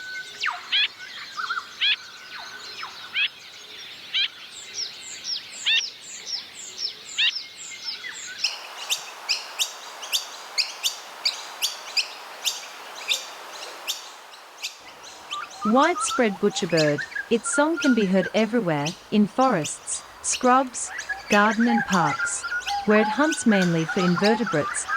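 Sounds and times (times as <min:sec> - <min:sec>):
small birds calling: 0:00.0 - 0:24.9.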